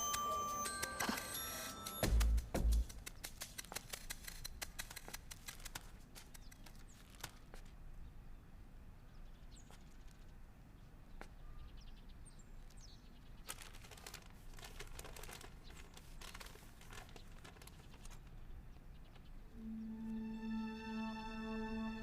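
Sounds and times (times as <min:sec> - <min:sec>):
paper-like rustling: 0:00.1 - 0:07.8, 0:12.6 - 0:19.3.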